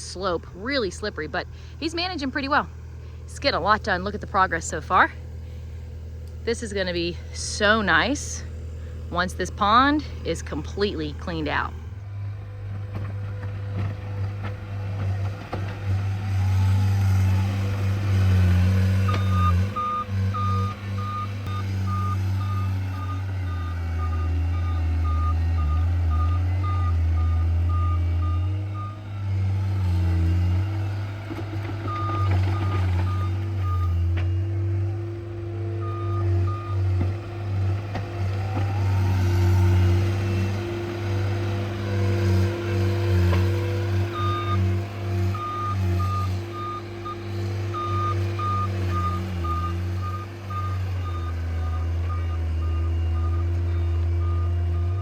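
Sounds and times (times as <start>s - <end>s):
diesel engine working: 0.0s - 55.0s
backup alarm beeping: 19.0s - 29.0s, 31.8s - 34.5s, 35.7s - 36.9s, 44.0s - 44.7s, 45.3s - 55.0s.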